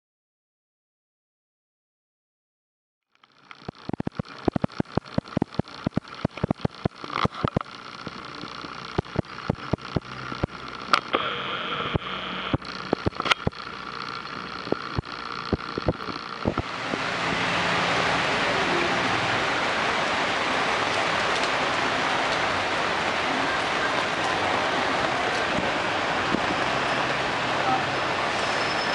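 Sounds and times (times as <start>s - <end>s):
raindrops tapping hard surface: 3.3s - 11.1s, 12.6s - 17.2s, 20.7s - 26.7s
steady hiss of rain: 3.3s - 28.9s.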